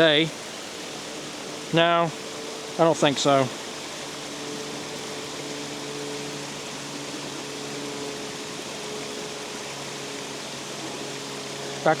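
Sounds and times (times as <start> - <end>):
water pouring over spillway: 0.0 - 12.0.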